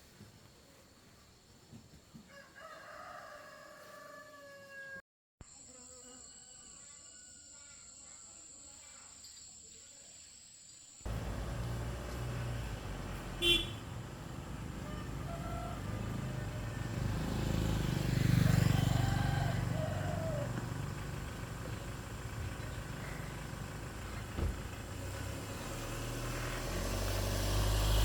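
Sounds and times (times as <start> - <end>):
rooster crowing: 2.3 - 5.0, 14.8 - 20.7
loud low engine rumble: 11.1 - 28.0.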